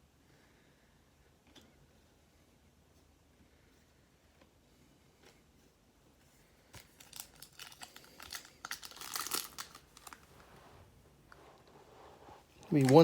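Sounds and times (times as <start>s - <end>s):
wrapper tearing and crinkling: 6.8s - 10.3s, 12.6s - 13.0s.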